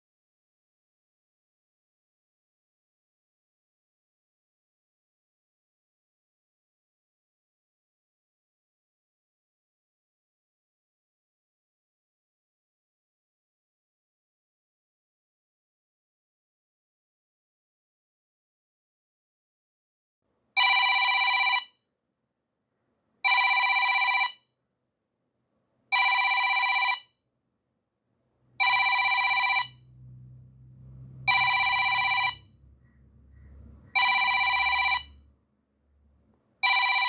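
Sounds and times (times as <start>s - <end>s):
digital timer alarm ringing: 28.6s - 29.8s, 31.3s - 32.5s, 34.0s - 35.2s, 36.6s - 37.0s.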